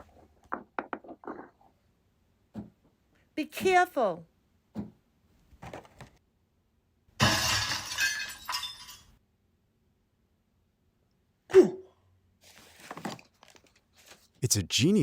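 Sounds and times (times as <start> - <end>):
glass shattering: 7.2 - 9.1.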